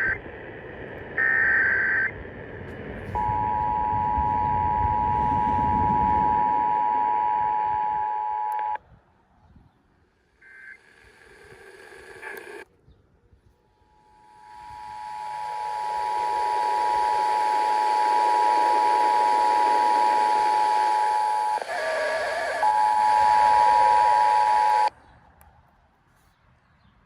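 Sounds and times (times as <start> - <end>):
radio static hiss: 0.0 - 8.8, 10.3 - 12.7, 13.9 - 24.9
two-tone alert signal: 3.2 - 8.8.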